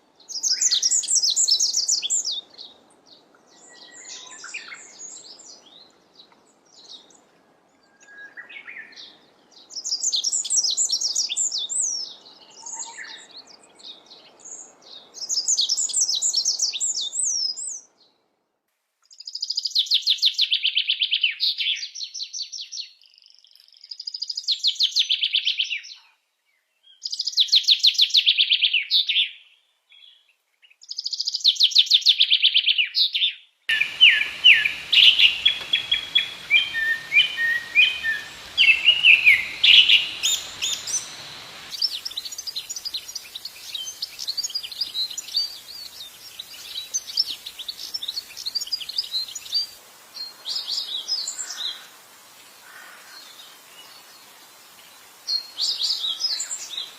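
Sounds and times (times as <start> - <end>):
bird chirping: 0.3 - 7.2, 26.9 - 51.8
bird trilling song: 30.8 - 51.8.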